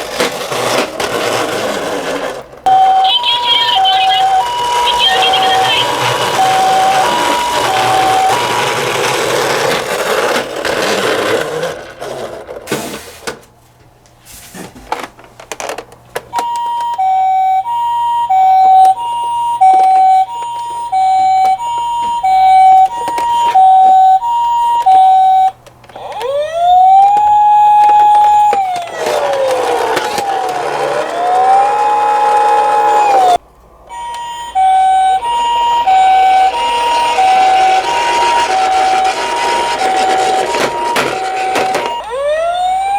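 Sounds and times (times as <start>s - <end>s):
toy siren high-low tone: 2.7s - 9.5s, 16.4s - 42.9s
wailing siren: 2.7s - 10.0s, 16.4s - 42.9s.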